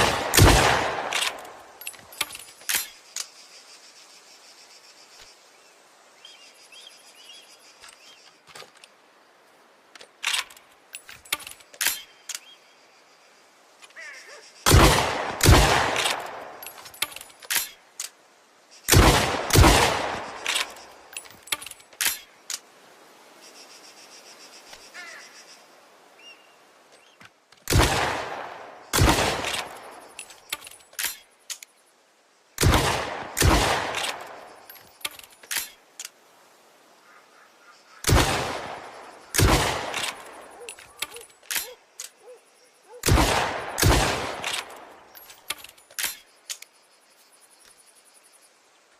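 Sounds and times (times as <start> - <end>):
shotgun shots: 0.0 - 1.6, 14.7 - 16.6, 18.9 - 20.8, 27.7 - 29.8, 32.6 - 34.5, 38.0 - 40.4, 43.0 - 44.9
faint clicks: 44.4 - 46.8.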